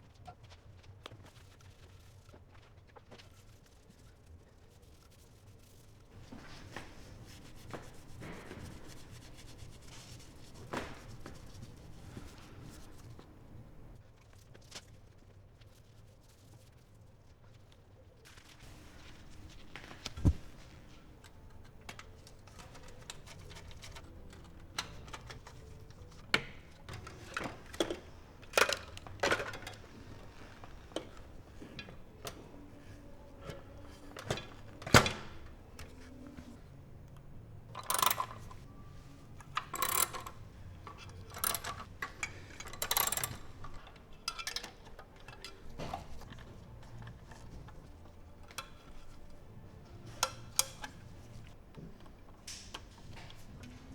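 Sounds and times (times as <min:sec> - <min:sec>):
computer parts clicking and clattering: 0:37.0 - 0:38.7, 0:39.4 - 0:47.4.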